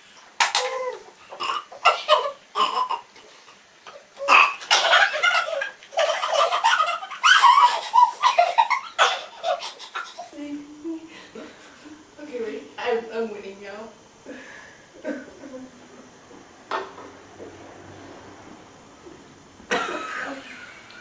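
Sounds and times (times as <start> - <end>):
girls giggling: 0.6 - 10.4, 15.0 - 15.8, 19.7 - 21.0.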